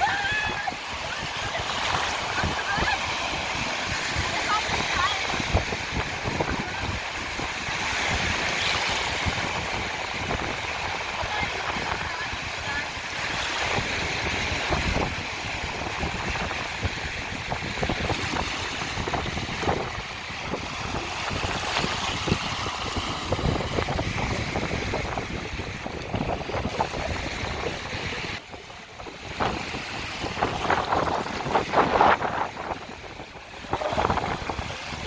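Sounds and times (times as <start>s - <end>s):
sea waves washing onto beach: 0.0s - 35.0s
wind buffeting microphone: 0.0s - 35.0s.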